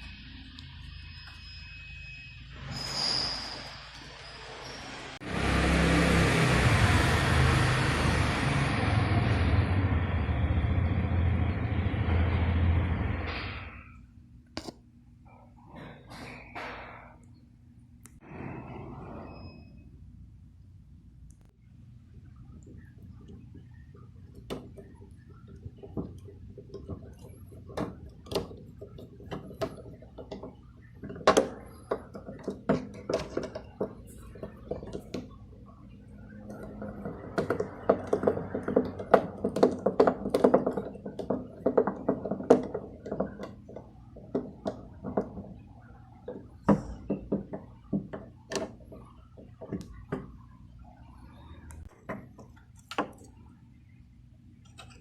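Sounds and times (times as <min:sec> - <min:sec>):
tools clicking and knocking: 0:22.6 - 0:35.7, 0:36.5 - 0:50.4, 0:54.6 - 0:55.0.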